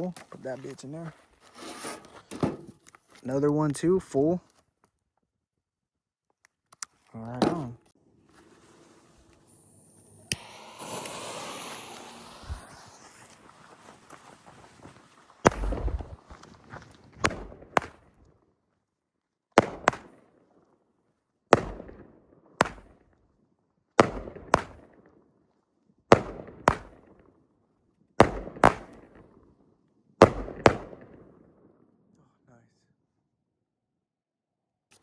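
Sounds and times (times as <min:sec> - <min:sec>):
firework bangs with echo: 0:15.4 - 0:16.2, 0:21.6 - 0:23.0, 0:24.0 - 0:24.9, 0:28.2 - 0:29.3, 0:30.2 - 0:31.3.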